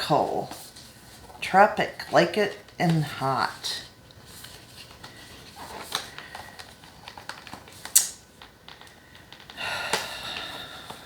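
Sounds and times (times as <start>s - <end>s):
packaging clicks and rustles: 4.1s - 11.0s.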